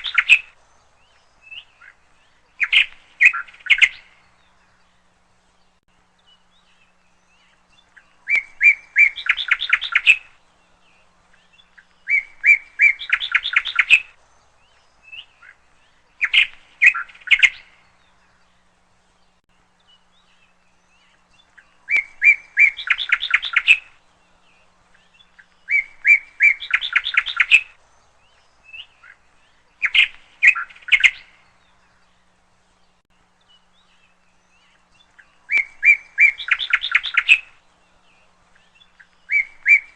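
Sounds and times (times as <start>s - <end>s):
songbird singing with trill: 0.0s - 39.9s.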